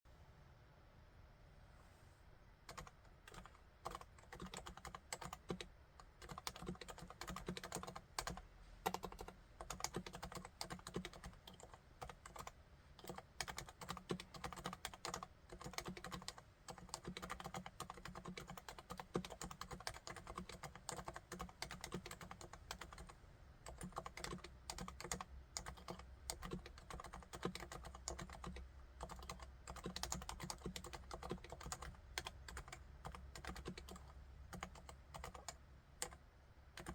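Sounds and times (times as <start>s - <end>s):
soft muted keyboard typing: 2.6s - 36.9s.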